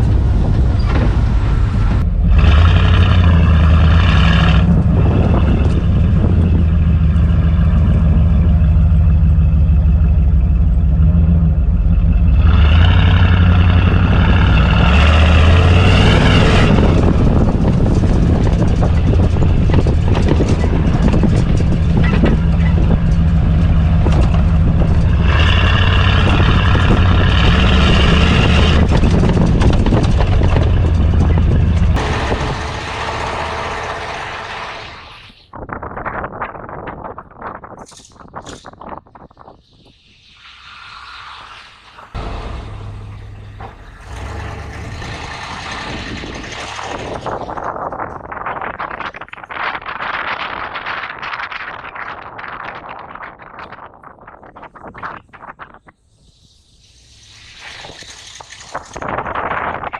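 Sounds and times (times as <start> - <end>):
truck engine revving: 0.0 - 35.5, 40.8 - 48.8.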